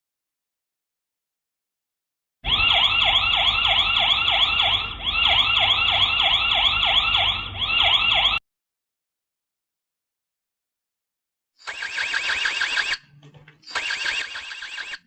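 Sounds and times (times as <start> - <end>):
electronic siren yelp: 2.4 - 8.4, 11.6 - 15.0.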